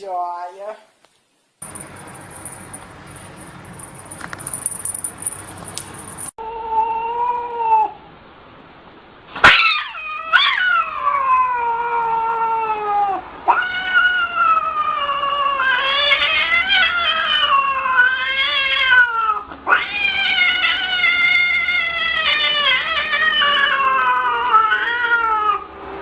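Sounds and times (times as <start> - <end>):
cat yowling: 6.4 - 8.0, 9.4 - 25.7.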